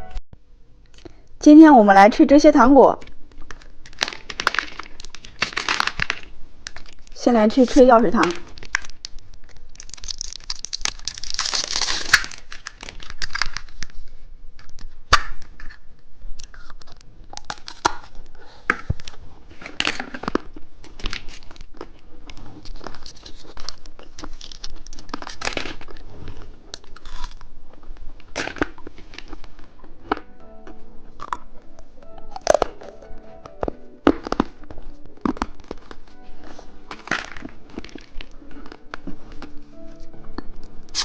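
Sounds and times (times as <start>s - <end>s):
plastic wrapper ripping: 3.0s - 7.2s, 8.2s - 14.0s, 14.6s - 18.4s, 19.0s - 30.3s, 32.2s - 39.7s
packaging crinkling: 3.1s - 7.2s, 8.2s - 14.0s, 14.6s - 30.3s, 32.1s - 40.0s.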